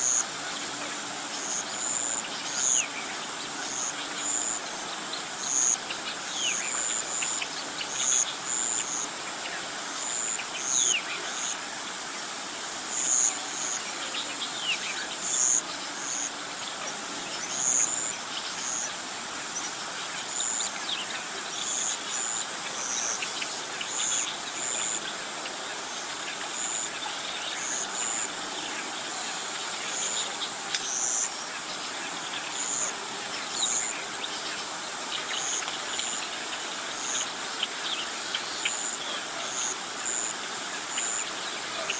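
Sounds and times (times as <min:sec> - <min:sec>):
insects chirping: 0:00.0 - 0:41.9
steady high hiss: 0:00.0 - 0:41.9.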